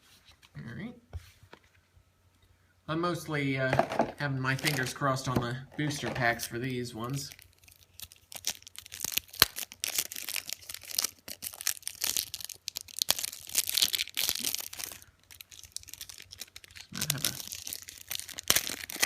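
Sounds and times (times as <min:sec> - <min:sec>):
plastic packaging tearing: 0:07.2 - 0:19.0.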